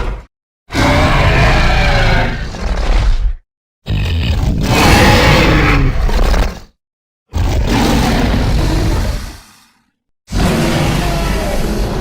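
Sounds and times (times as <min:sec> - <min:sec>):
monster roar: 0:00.0 - 0:06.6, 0:10.3 - 0:12.0
deep rumbling monster sound: 0:10.3 - 0:12.0.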